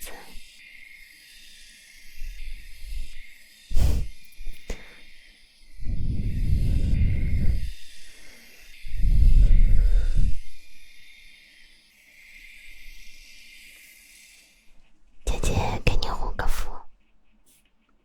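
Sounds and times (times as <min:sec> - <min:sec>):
rubbing strokes on microphone: 0:02.2 - 0:05.0, 0:05.8 - 0:10.7, 0:14.4 - 0:18.0.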